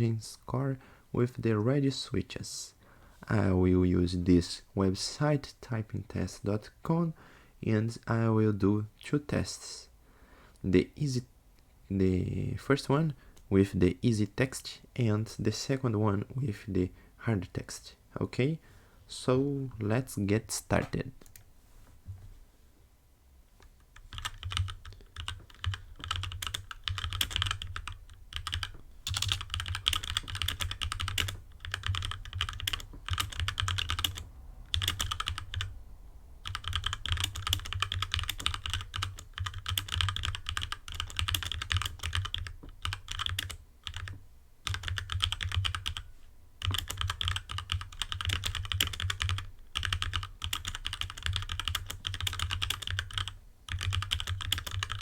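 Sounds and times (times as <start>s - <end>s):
mechanical keyboard typing: 24.0s - 35.7s, 36.4s - 55.0s.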